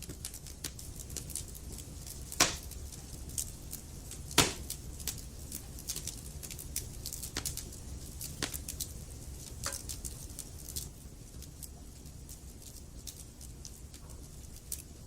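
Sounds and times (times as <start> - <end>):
wood fire crackling: 0.0 - 15.0
loud fire pops: 0.2 - 6.1.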